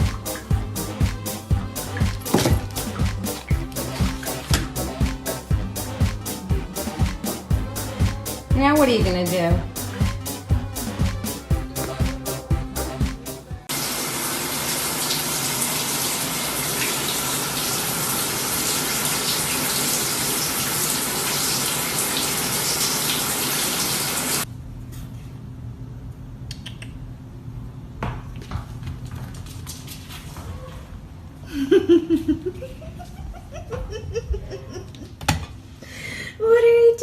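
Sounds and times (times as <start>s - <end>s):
tap water running: 0.0s - 12.1s, 13.7s - 24.5s.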